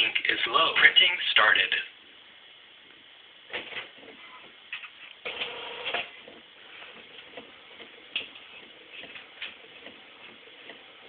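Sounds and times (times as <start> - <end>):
printer clattering: 4.8 - 11.0.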